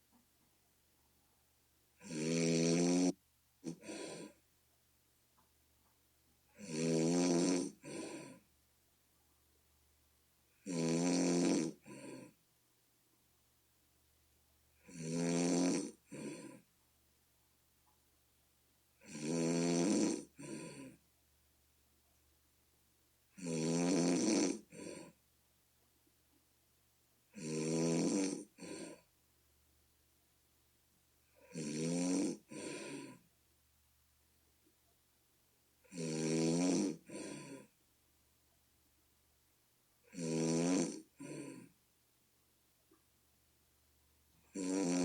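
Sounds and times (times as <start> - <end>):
person snoring: 2.0 - 4.4, 6.6 - 8.4, 10.6 - 12.4, 14.8 - 16.6, 19.0 - 21.0, 23.4 - 25.2, 27.3 - 29.1, 31.4 - 33.2, 35.8 - 37.7, 40.0 - 41.7, 44.5 - 45.0.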